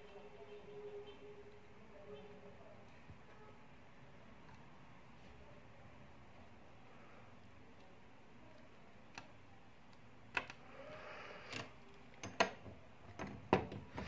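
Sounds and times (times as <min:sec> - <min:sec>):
small parts clicking and tapping: 0:07.4 - 0:14.0.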